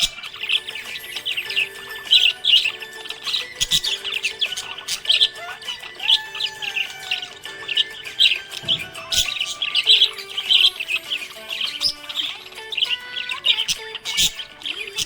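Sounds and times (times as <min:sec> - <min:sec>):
budgies chirping: 0:00.0 - 0:15.0.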